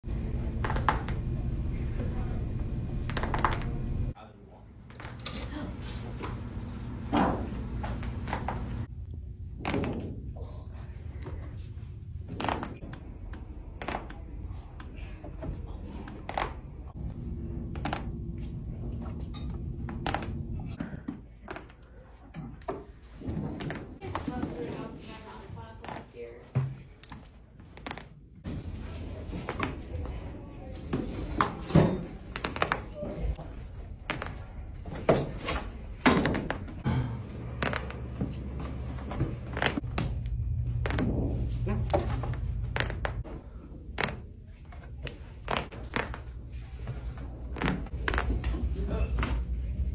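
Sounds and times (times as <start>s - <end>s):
spinal joints cracking: 37.5s - 38.0s, 40.8s - 41.1s, 41.8s - 43.3s, 44.0s - 46.3s, 47.5s - 48.6s.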